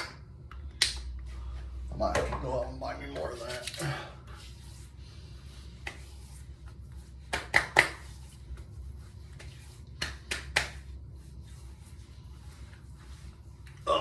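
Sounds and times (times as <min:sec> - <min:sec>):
hands slapping face: 0:00.0 - 0:01.2, 0:05.8 - 0:06.1, 0:07.2 - 0:08.7, 0:09.3 - 0:10.9.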